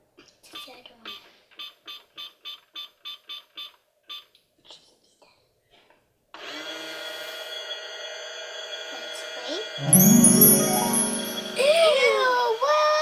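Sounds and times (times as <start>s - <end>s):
electronic jingle: 9.8s - 12.1s.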